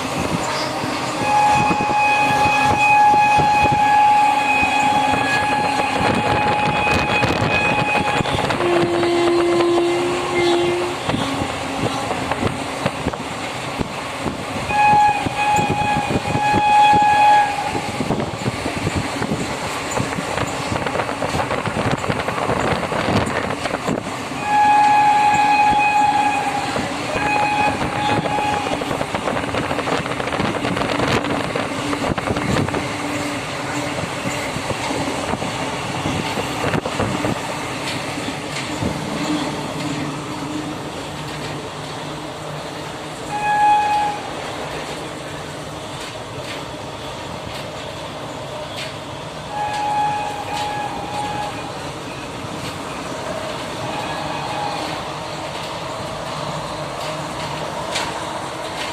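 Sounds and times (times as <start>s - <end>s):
train rumble and wheel clatter: 0.0s - 58.9s
train horn blasts: 0.2s - 12.6s, 14.6s - 18.4s, 24.4s - 35.4s, 43.2s - 44.4s, 48.7s - 52.2s, 53.2s - 55.2s.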